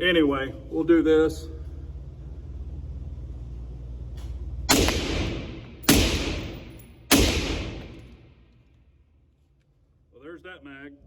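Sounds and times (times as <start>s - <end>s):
rifle shots echoing: 4.7s - 8.3s.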